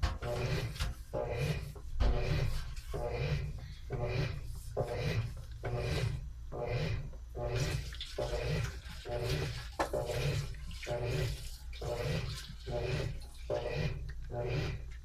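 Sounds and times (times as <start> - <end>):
washing machine motor hum: 0.0 - 15.0
water sloshing: 7.4 - 14.9.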